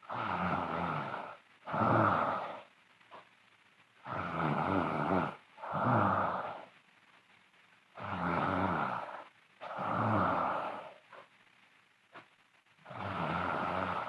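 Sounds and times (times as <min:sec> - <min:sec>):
girl snoring loudly: 0:00.0 - 0:02.7, 0:04.0 - 0:06.7, 0:08.0 - 0:10.9, 0:12.9 - 0:14.0.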